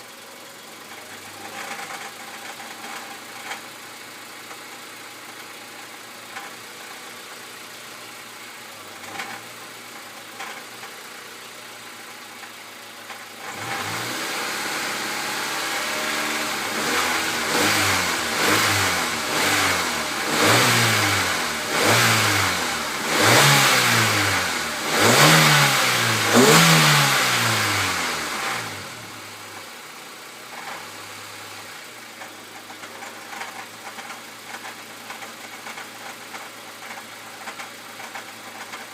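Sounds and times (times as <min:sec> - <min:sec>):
car engine idling and revving: 0:00.0 - 0:38.9
engine knocking rattle: 0:32.1 - 0:38.9.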